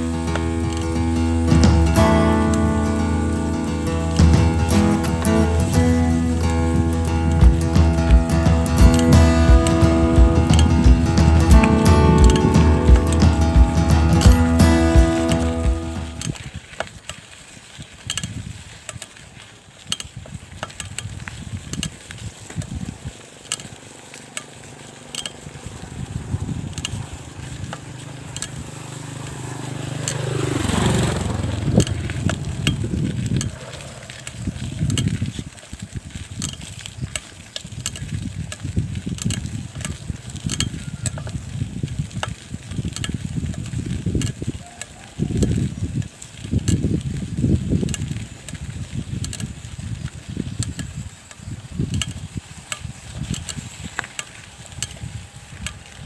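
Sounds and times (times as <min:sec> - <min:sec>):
low rumble: 0:00.0 - 0:16.3, 0:30.6 - 0:35.3
vehicle passing: 0:00.0 - 0:16.4, 0:23.3 - 0:35.4
bicycle rattling and clicking: 0:00.0 - 0:56.0.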